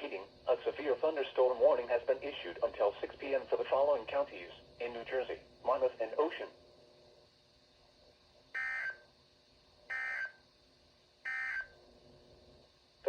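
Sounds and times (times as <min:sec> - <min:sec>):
digital tone bursts: 0:09.9 - 0:10.3, 0:11.3 - 0:11.7.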